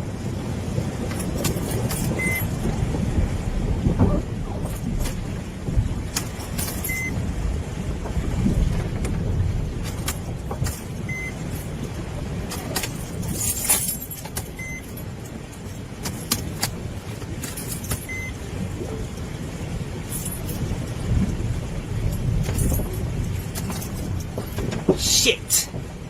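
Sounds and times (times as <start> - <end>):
van engine and road rumble: 0.0 - 26.0
short high beep: 2.2 - 2.4, 6.9 - 7.1, 18.1 - 18.3
small clicks and rattles: 6.1 - 7.1, 12.5 - 18.2, 22.1 - 25.0.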